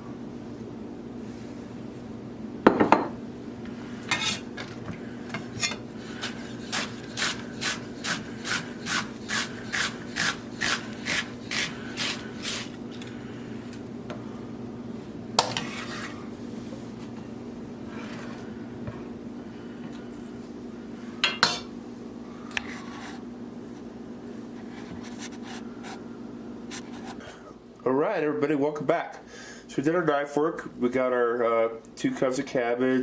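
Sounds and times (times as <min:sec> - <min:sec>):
knock on cutting board: 0:02.7 - 0:03.1
knife cutting on wooden board: 0:06.2 - 0:12.7.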